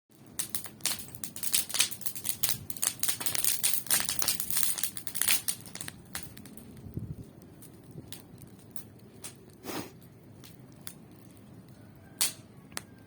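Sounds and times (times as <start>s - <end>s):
bonfire crackling and popping: 0.1s - 13.0s.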